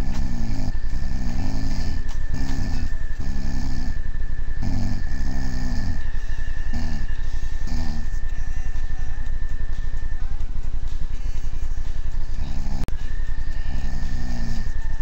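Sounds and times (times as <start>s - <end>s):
loud snoring: 0.0s - 8.3s, 12.4s - 12.9s, 13.6s - 14.8s
low rumble: 0.0s - 15.0s
thin high whine: 0.0s - 15.0s.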